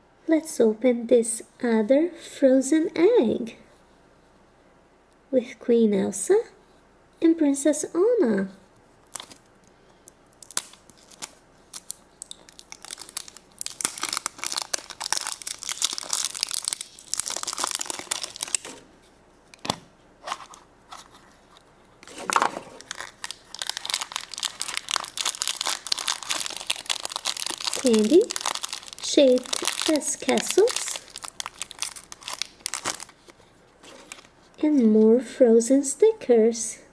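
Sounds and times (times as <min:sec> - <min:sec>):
wrapper crinkling and tearing: 0:09.1 - 0:09.5, 0:10.3 - 0:18.8, 0:20.2 - 0:34.6.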